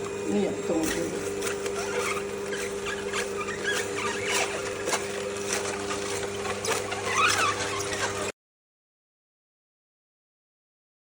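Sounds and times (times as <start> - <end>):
juicer motor hum: 0.0 - 8.4
squeaks and crackles of pressing: 0.9 - 8.3.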